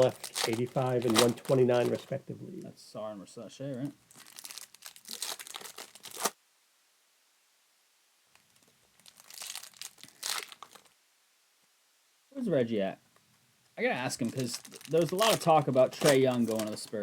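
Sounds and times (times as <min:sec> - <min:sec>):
wrappers tearing and crinkling: 0:00.0 - 0:02.2, 0:04.1 - 0:06.4, 0:08.4 - 0:11.0, 0:14.0 - 0:17.0.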